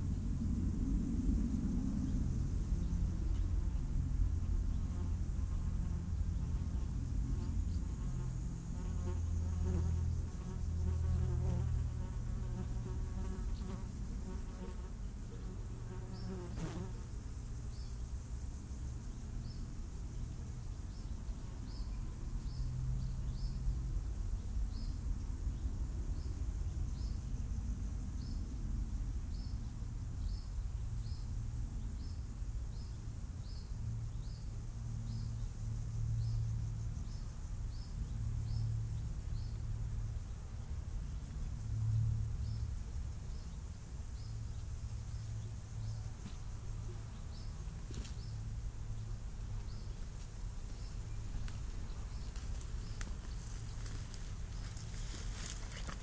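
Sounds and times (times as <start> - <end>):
steady low hum: 0.0 - 56.0
flying insect buzzing: 1.8 - 18.0, 42.4 - 56.0.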